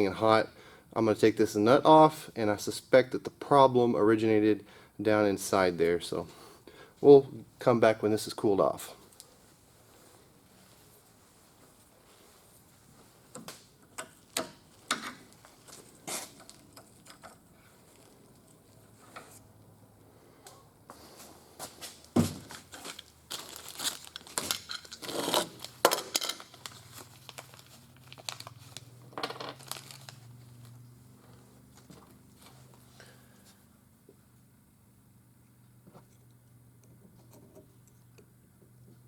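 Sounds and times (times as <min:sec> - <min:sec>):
rustling and scraping: 0:09.1 - 0:19.6, 0:20.9 - 0:33.6.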